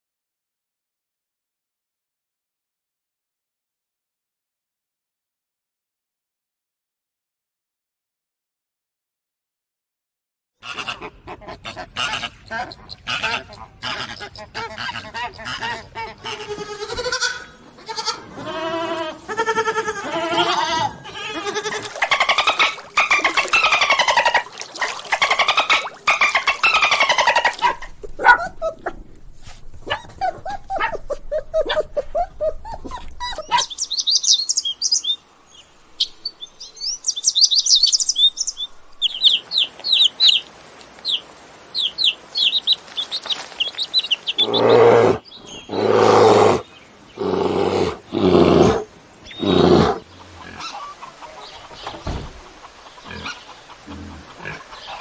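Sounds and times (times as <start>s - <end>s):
loud low animal calls: 10.7s - 33.8s, 44.3s - 51.4s
birds chirping: 11.8s - 55.0s
goat bleating: 14.9s - 22.1s.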